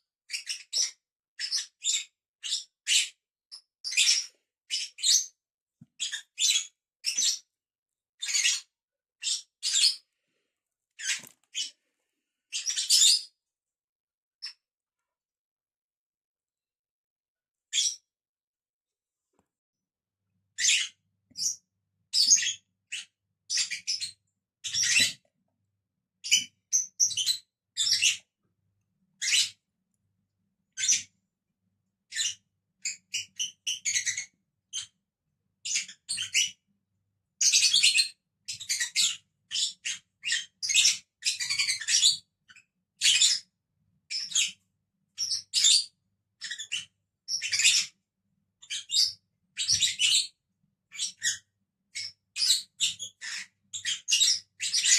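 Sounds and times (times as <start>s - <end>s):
lovebirds chirping: 11.0s - 11.8s, 12.5s - 13.4s, 20.6s - 21.6s.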